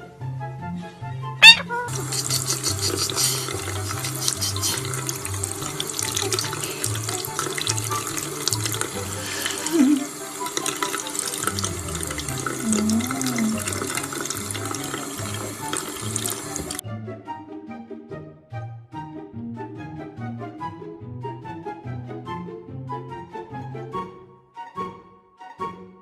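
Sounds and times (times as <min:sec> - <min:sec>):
running water from a tap: 0:01.9 - 0:16.8.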